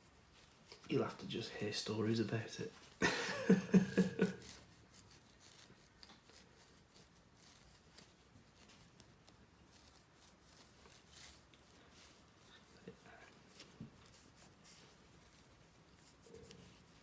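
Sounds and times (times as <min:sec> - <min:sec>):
cloth rubbing: 0:00.0 - 0:17.0
small scratchy ticks: 0:04.5 - 0:17.0.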